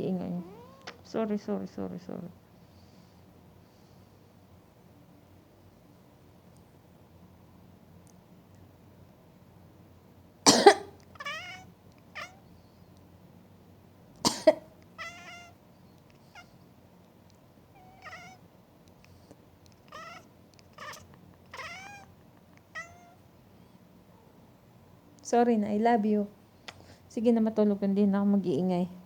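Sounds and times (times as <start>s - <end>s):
cat meowing: 0.3s - 1.0s, 11.1s - 12.4s, 15.0s - 15.6s, 17.7s - 18.4s, 19.7s - 23.2s
person coughing loudly: 10.5s - 10.9s, 14.3s - 14.7s.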